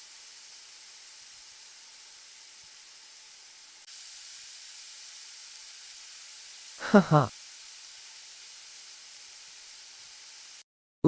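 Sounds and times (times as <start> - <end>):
electronic sizzling hiss: 0.0 - 10.6.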